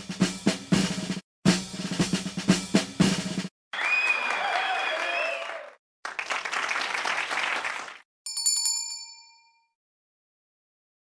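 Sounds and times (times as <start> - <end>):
applause: 3.7 - 8.1
bright bell ding: 8.3 - 9.7.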